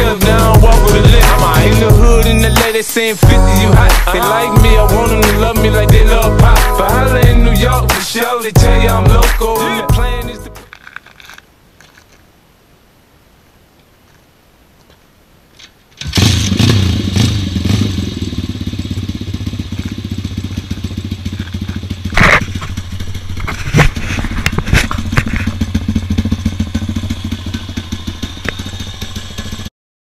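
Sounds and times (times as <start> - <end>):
engine running: 16.0 - 29.7
sharp clicks and clatter: 19.7 - 29.7.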